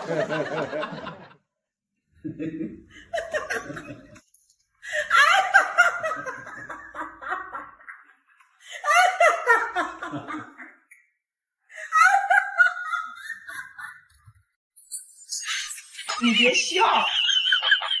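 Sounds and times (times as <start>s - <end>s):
laughter: 0.0s - 1.5s, 2.2s - 4.2s, 4.9s - 11.1s, 11.8s - 14.4s, 15.4s - 18.0s.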